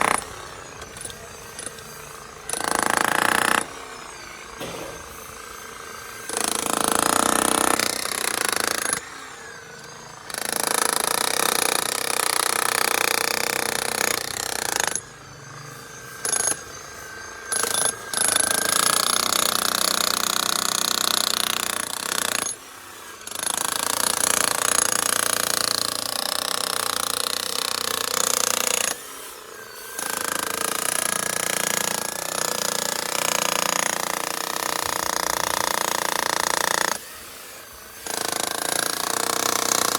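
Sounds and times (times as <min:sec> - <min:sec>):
demolition hammer hammering: 0:04.6 - 0:05.2.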